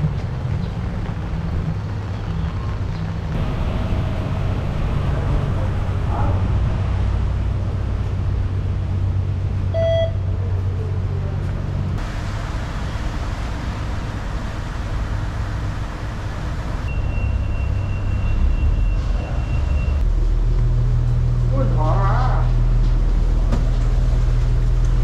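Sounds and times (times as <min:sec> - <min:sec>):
vehicle engine rumble: 0:00.0 - 0:21.5
short electronic beep: 0:16.9 - 0:20.0.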